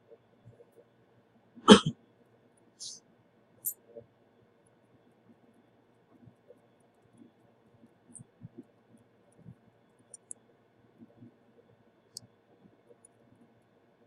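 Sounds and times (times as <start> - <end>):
faint sharp ticks: 10.1 - 10.4.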